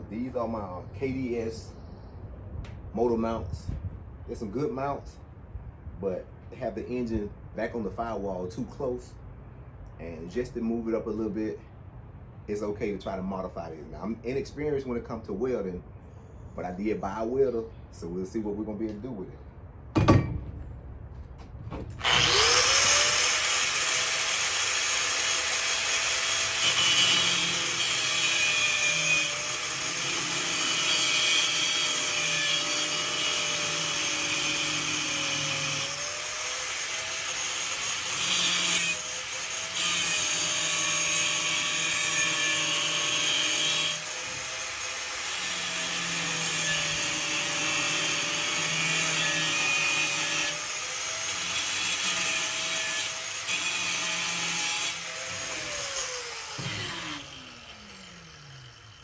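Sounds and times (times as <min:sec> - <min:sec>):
angle grinder grinding steel: 0:22.0 - 0:59.0.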